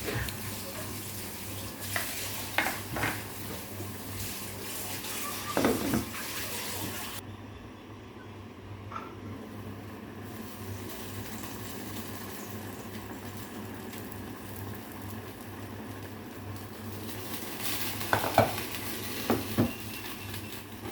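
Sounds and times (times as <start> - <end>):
food sizzling in a pan: 0.0 - 7.2, 9.5 - 20.9
utensil clanking against pan: 1.8 - 3.7, 17.6 - 20.9.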